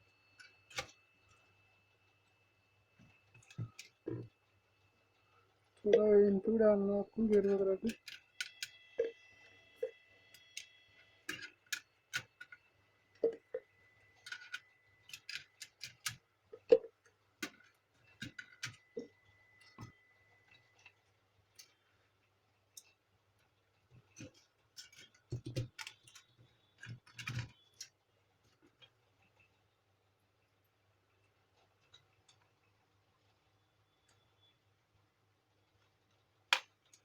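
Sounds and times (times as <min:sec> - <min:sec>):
plastic parts clicking and knocking: 0:03.0 - 0:04.4, 0:07.2 - 0:09.2, 0:10.4 - 0:21.8, 0:22.7 - 0:29.6, 0:35.8 - 0:37.0.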